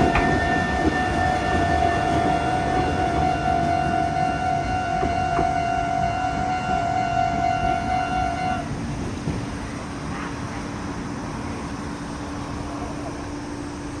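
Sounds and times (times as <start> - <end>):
level crossing warning bell: 0.0 - 8.7
passing train rumble: 0.0 - 14.0.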